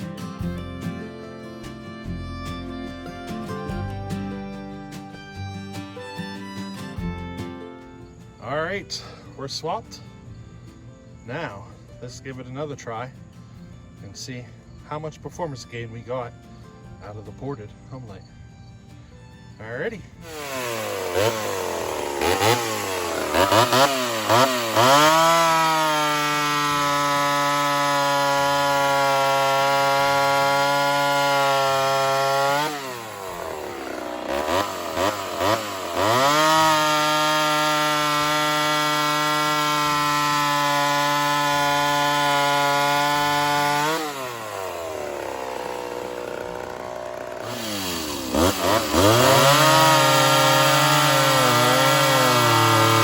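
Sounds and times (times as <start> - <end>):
chainsaw revving: 0.0 - 7.4, 20.2 - 53.0.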